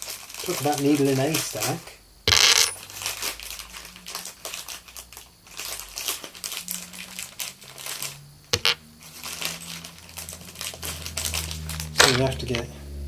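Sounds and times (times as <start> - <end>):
plastic packaging crinkling: 0.0 - 12.7
hardware parts clicking: 1.3 - 3.3, 7.9 - 10.0, 10.8 - 12.7.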